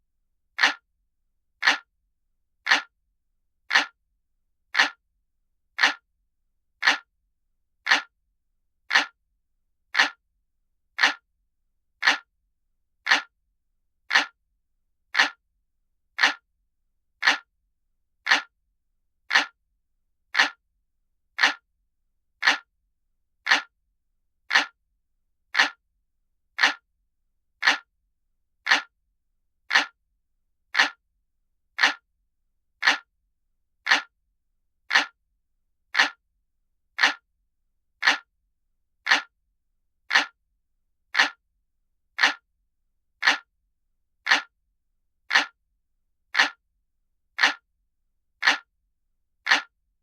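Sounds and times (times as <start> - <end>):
clock ticking: 0.6 - 0.8, 1.6 - 1.9, 2.7 - 2.9, 3.7 - 4.0, 4.8 - 5.0, 5.8 - 6.0, 6.8 - 7.1, 7.9 - 8.1, 8.9 - 9.2, 10.0 - 10.2, 11.0 - 11.2, 12.0 - 12.3, 13.1 - 13.3, 14.1 - 14.4, 15.2 - 15.4, 16.2 - 16.4, 17.2 - 17.5, 18.3 - 18.5, 19.3 - 19.6, 20.4 - 20.6, 21.4 - 21.6, 22.4 - 22.7, 23.5 - 23.7, 24.5 - 24.8, 25.6 - 25.8, 26.6 - 26.8, 27.6 - 27.9, 28.7 - 28.9, 29.7 - 30.0, 30.8 - 31.0, 31.8 - 32.0, 32.8 - 33.1, 33.8 - 34.1, 34.9 - 35.2, 35.9 - 36.2, 37.0 - 37.2, 38.0 - 38.3, 39.0 - 39.3, 40.1 - 40.4, 41.1 - 41.4, 42.2 - 42.4, 43.2 - 43.5, 44.2 - 44.5, 45.3 - 45.6, 46.3 - 46.6, 47.4 - 47.6, 48.4 - 48.7, 49.4 - 49.7.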